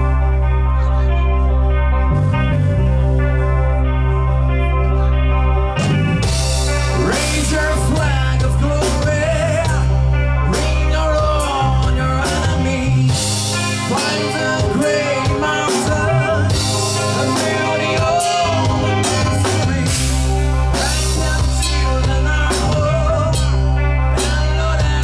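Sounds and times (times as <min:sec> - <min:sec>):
live rock band playing: 0:00.0 - 0:25.0
sliding lead melody: 0:00.0 - 0:25.0.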